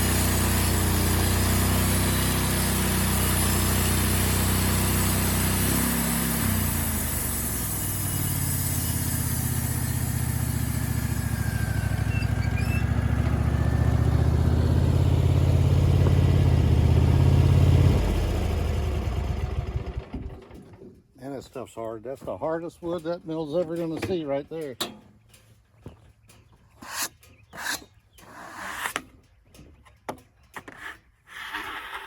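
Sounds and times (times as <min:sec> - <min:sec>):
saw blade cutting log: 0:00.0 - 0:13.0, 0:26.8 - 0:29.2, 0:30.6 - 0:32.0
sawmill engine under load: 0:00.0 - 0:21.0, 0:26.8 - 0:29.2.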